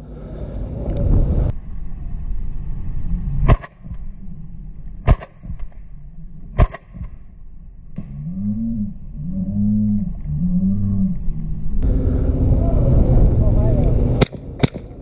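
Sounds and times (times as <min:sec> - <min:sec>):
loud rumbling noise: 0:00.0 - 0:15.0
airsoft gun shots: 0:05.0 - 0:05.6, 0:06.6 - 0:07.2, 0:14.2 - 0:15.0.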